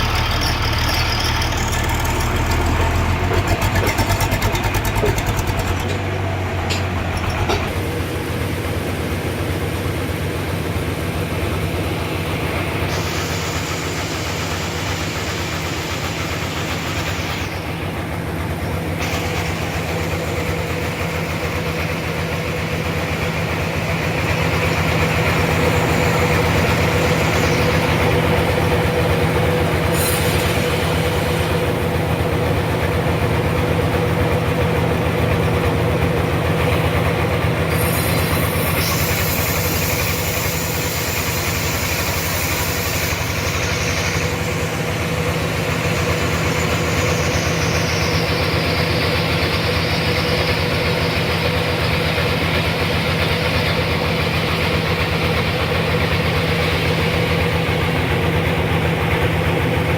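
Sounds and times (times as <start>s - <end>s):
sawmill machine drone: 0.0s - 59.9s
saw hiss: 11.4s - 35.4s, 36.4s - 59.9s.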